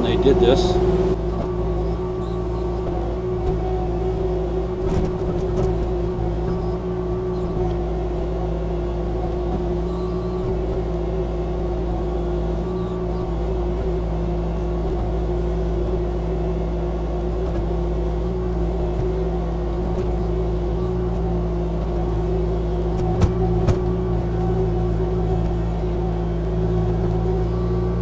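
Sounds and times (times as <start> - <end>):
excavator engine droning: 0.0 - 28.0.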